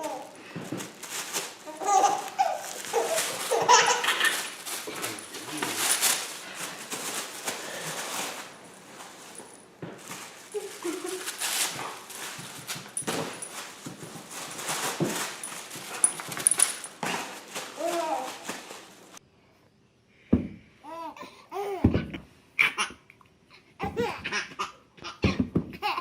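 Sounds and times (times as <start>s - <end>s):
baby laughing: 1.7s - 4.6s, 23.8s - 26.0s.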